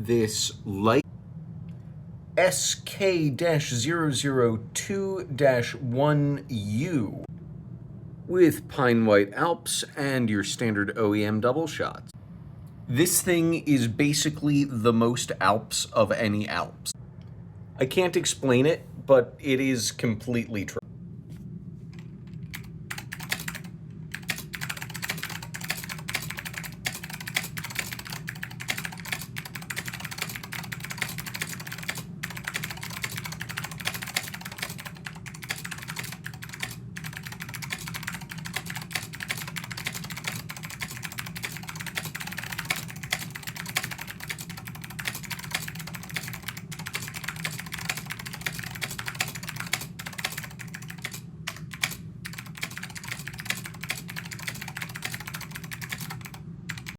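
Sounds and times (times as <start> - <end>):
fast keyboard typing: 22.4 - 56.9.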